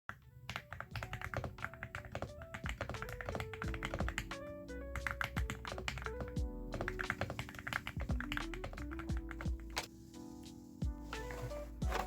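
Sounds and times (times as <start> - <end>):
background music: 0.1 - 12.0
mechanical keyboard typing: 0.5 - 4.4, 5.0 - 9.9.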